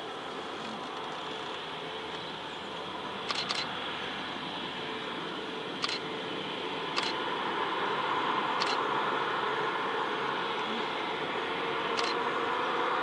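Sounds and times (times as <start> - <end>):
jet engine noise: 0.0 - 13.0
camera shutters clicking: 7.0 - 7.2.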